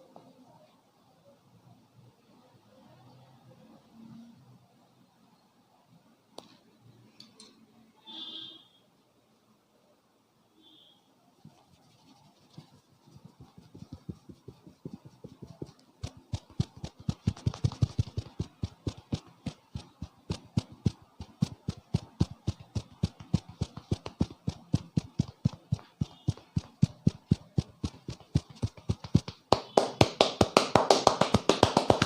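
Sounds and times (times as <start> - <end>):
hands tapping in head massage: 11.8 - 32.0.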